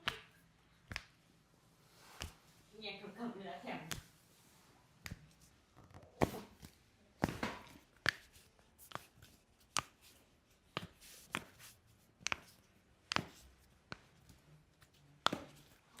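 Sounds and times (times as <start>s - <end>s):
hands slapping a body: 0.0s - 1.2s, 2.2s - 2.4s, 3.8s - 4.2s, 5.0s - 5.4s, 6.2s - 14.4s, 15.2s - 16.0s.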